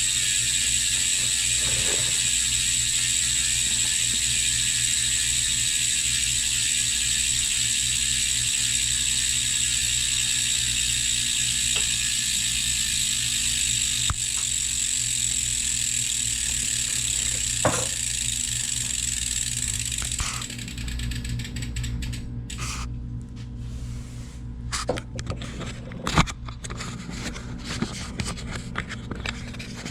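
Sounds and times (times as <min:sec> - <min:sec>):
ratchet ticking: 0:00.0 - 0:22.6
bicycle mechanism whirring: 0:00.0 - 0:22.9.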